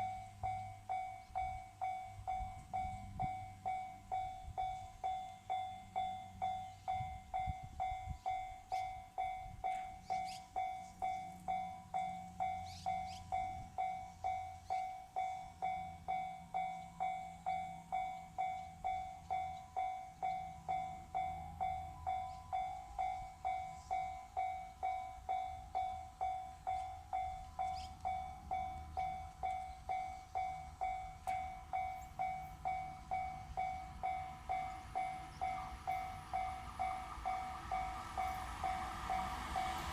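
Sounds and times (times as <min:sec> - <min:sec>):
freight train rumbling past: 0:00.0 - 0:39.9
level crossing alarm dinging: 0:00.0 - 0:39.9.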